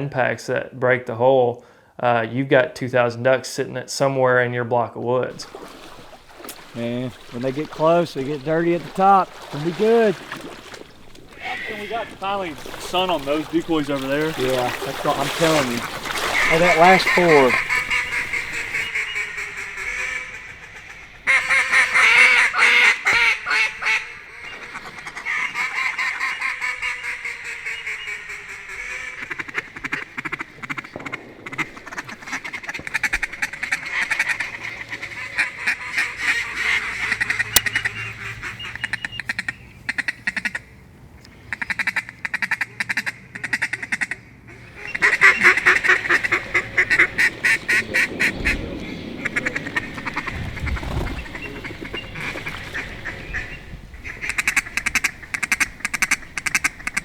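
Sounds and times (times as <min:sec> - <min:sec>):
mallard quacking and chattering: 0:05.4 - 0:19.0, 0:41.5 - 0:57.0.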